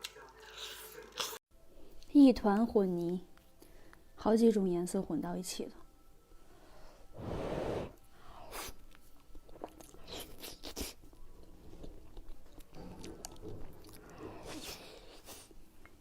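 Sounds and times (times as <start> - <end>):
person chewing crunchy food: 8.9 - 16.0.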